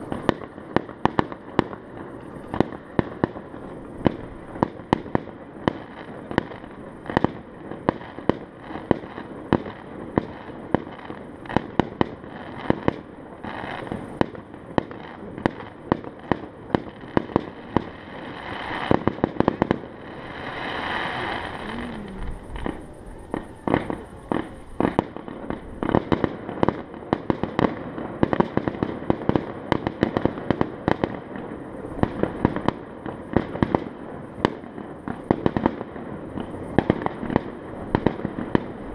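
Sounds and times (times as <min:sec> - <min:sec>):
fireworks banging: 0:00.0 - 0:38.9
hissing rush: 0:19.9 - 0:25.2.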